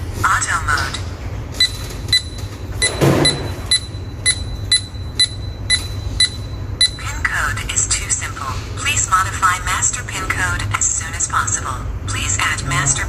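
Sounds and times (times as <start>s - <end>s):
keypad beeping: 1.6s - 7.1s.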